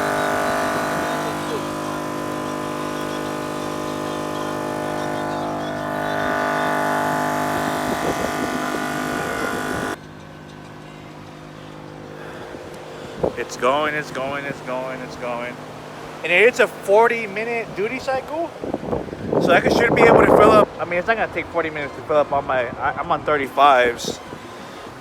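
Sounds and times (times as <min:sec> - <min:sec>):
air compressor running: 0:00.0 - 0:16.6.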